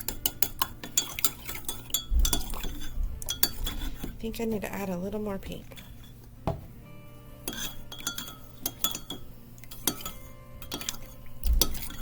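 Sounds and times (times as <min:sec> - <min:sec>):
utensil clinking against container: 0:00.0 - 0:04.2, 0:07.4 - 0:12.0.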